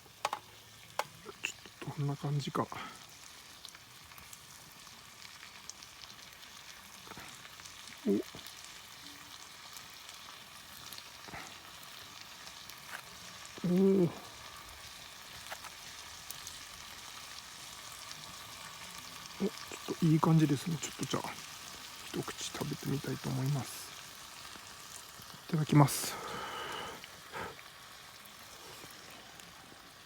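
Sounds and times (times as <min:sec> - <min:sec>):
food sizzling and crackling: 0:00.0 - 0:30.0
person humming: 0:08.0 - 0:08.4, 0:13.6 - 0:14.2.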